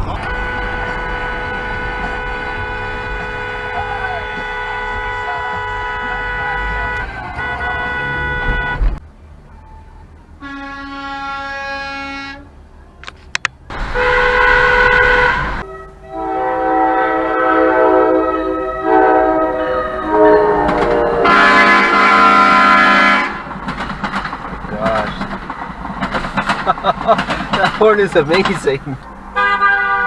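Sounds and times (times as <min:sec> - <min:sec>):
horn playing changing notes: 0:00.0 - 0:09.0, 0:13.7 - 0:23.5, 0:29.4 - 0:30.0
vehicle horn honks: 0:00.1 - 0:08.9, 0:09.5 - 0:12.4, 0:13.8 - 0:23.5, 0:29.4 - 0:30.0.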